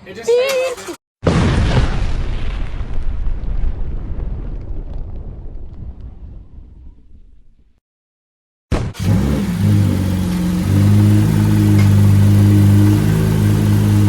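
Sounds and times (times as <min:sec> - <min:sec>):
car engine idling: 0:09.0 - 0:14.0.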